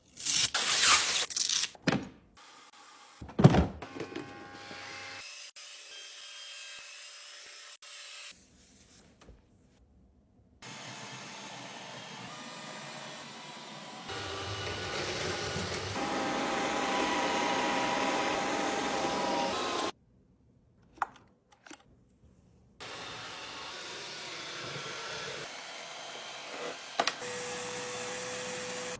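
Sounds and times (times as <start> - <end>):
robot vacuum whirring: 10.7 - 19.9.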